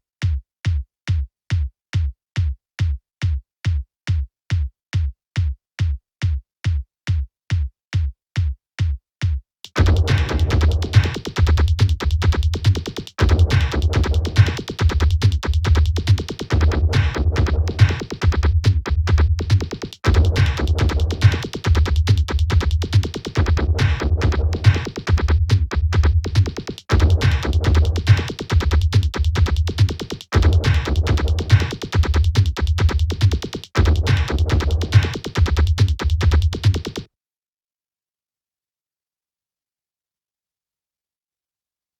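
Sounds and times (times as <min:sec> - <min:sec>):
drum machine beat with bass: 0:00.2 - 0:37.1
kick drum beating: 0:00.2 - 0:37.1
cymbals and percussion: 0:09.7 - 0:18.8, 0:26.4 - 0:37.0.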